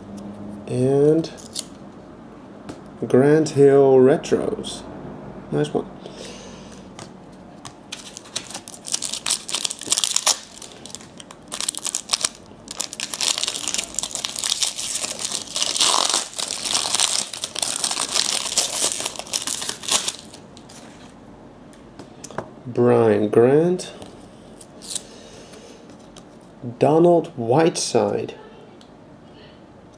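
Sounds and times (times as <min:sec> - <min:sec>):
plastic wrapper crinkling and tearing: 0:07.9 - 0:20.4, 0:24.5 - 0:25.0.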